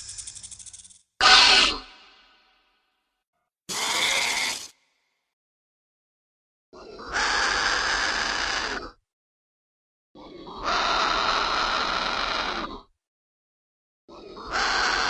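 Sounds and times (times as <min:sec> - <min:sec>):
dinosaur call sound effect: 0:01.2 - 0:02.3.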